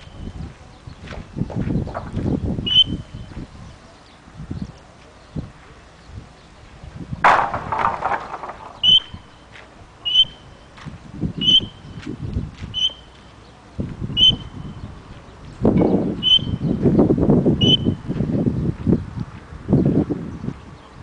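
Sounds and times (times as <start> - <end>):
high whistle-like squeaks: 8.8 - 9.3, 10.1 - 10.4, 12.8 - 13.2.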